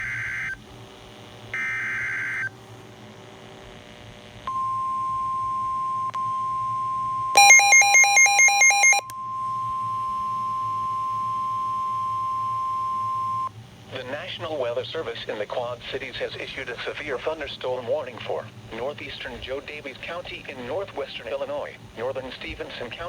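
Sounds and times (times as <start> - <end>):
steady warning alarm tone: 6.7 - 13.5
rapid loud beeps: 7.4 - 9.0
screeching data tone: 7.4 - 9.1.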